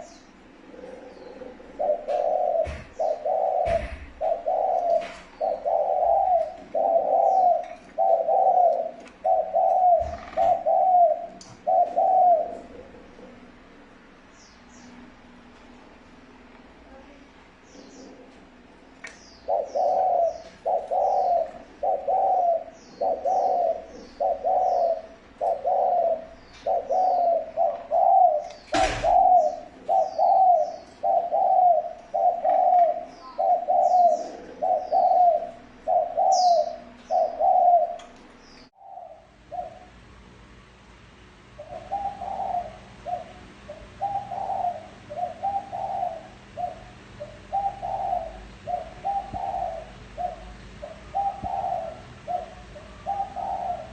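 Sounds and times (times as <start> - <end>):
dove cooing: 0.0 - 14.2, 16.9 - 40.2, 41.4 - 53.9
small bird chirping: 36.2 - 37.3.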